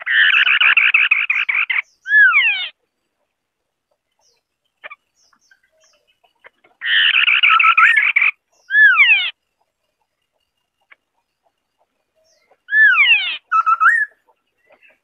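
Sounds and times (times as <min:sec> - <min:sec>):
harsh rapid bird chattering: 0:00.0 - 0:15.0
falling whistled bird calls: 0:06.8 - 0:09.4, 0:12.3 - 0:15.0.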